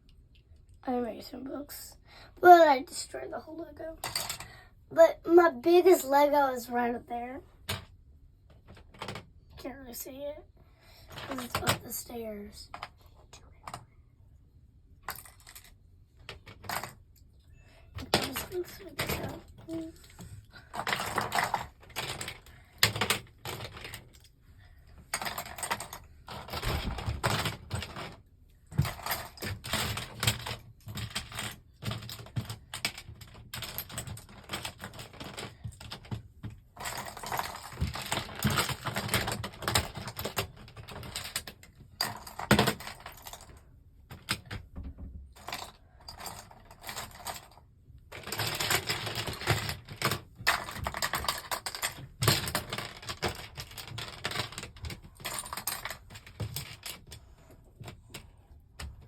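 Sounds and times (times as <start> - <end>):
plastic bricks clattering: 18.0 - 24.3, 45.4 - 57.2.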